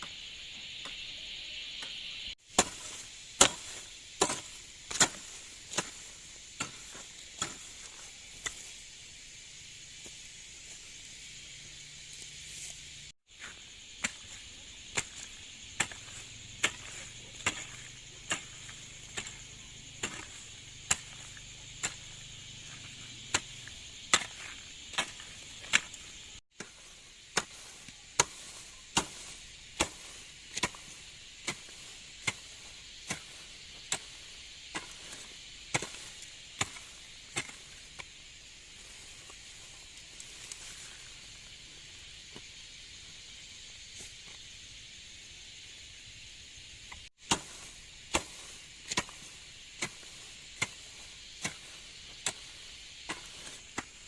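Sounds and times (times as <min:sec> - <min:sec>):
steady high hiss: 0:00.0 - 0:54.0
hand tool chopping into ground: 0:02.5 - 0:08.8, 0:13.3 - 0:41.4, 0:47.0 - 0:54.0.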